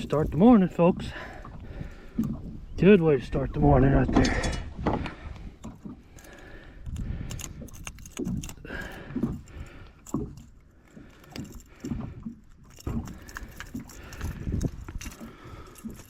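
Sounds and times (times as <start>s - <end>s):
wind buffeting microphone: 0.0s - 16.0s
clicks and rattles: 4.0s - 16.0s.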